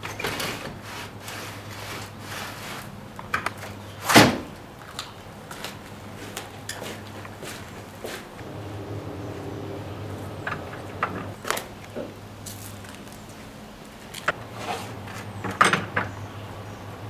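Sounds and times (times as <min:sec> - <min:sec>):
steady low hum: 0:07.3 - 0:17.0.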